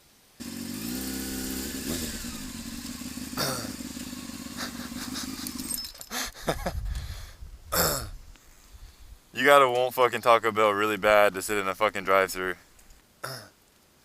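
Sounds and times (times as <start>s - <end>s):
motorcycle engine idling: 0.4s - 6.0s.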